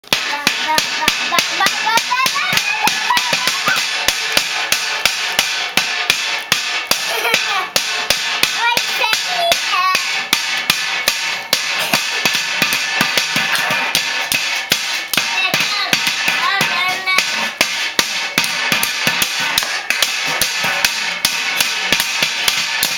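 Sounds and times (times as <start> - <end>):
children banging something hard: 0.0 - 22.9
young child calling out: 8.6 - 10.1, 15.4 - 17.4.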